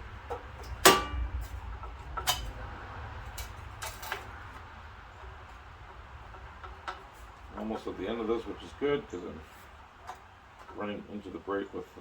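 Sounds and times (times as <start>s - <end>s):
steady low hum: 0.0s - 12.0s
sharp metallic clanks: 0.6s - 1.6s.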